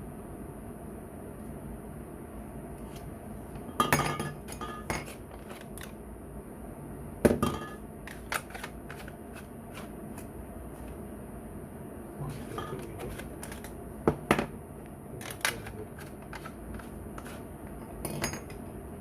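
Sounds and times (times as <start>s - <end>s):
hard objects knocking and clinking: 7.3s - 9.0s, 17.7s - 18.6s.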